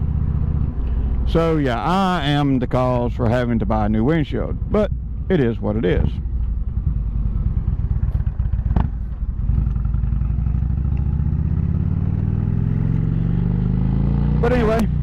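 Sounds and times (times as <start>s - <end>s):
motorcycle engine revving: 6.2s - 15.0s.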